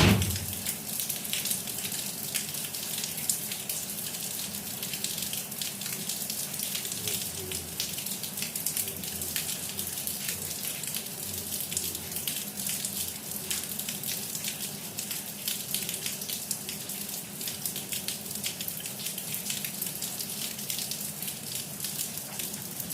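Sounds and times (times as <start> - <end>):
rain falling: 0.0 - 22.9.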